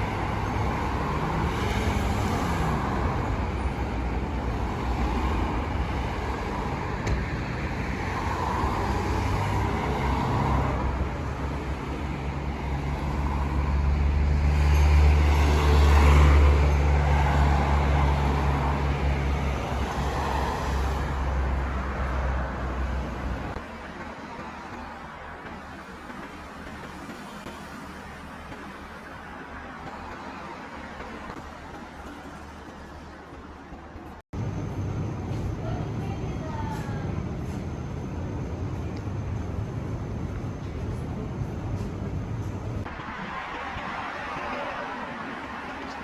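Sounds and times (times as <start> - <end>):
cars passing: 0.0 - 46.0.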